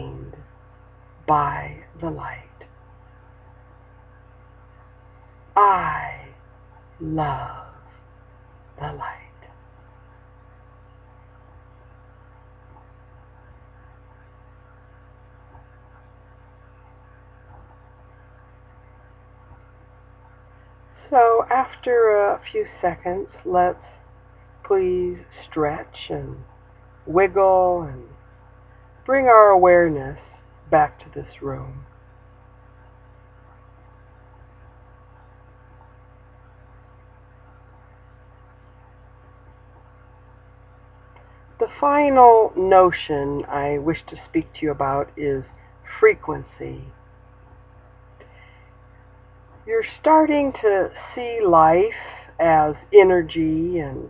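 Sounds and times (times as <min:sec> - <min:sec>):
electrical mains hum: 0:00.0 - 0:54.0
faint room hiss: 0:00.0 - 0:54.0.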